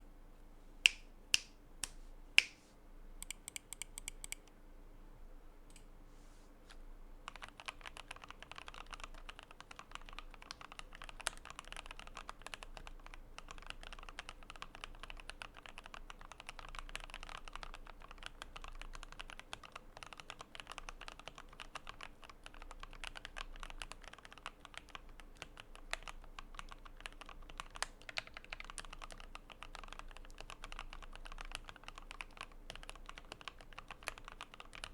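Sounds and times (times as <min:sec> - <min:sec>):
mechanical keyboard typing: 0:03.2 - 0:04.5, 0:07.3 - 0:34.9.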